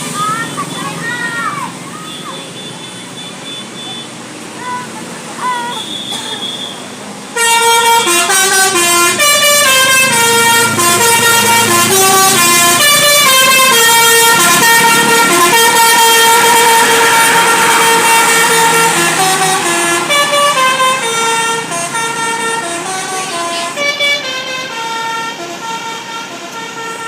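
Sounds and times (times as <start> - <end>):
bus musical horn tune: 5.7 - 27.0.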